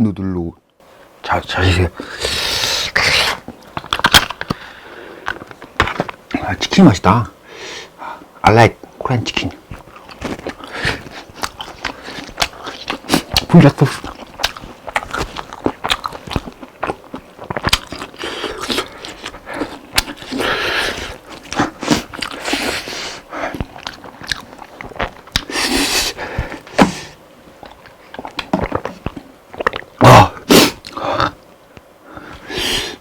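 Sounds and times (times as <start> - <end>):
crunching bites and chewing: 3.0 - 4.6, 9.7 - 31.4.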